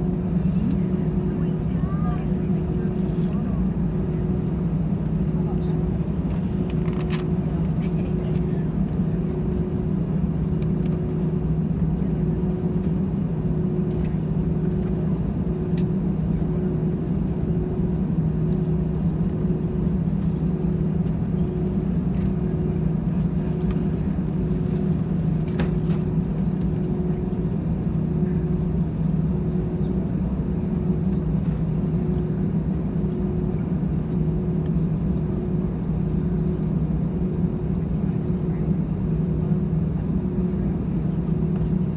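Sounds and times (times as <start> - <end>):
faint pulsing hum: 0.0 - 41.9
jet engine drone in cabin: 0.0 - 41.9.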